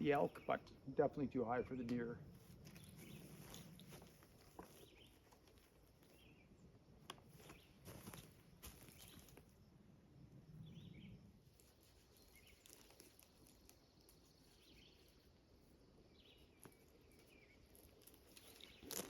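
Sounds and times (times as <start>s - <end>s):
faint bird chirps: 10.5s - 11.3s, 12.0s - 19.0s.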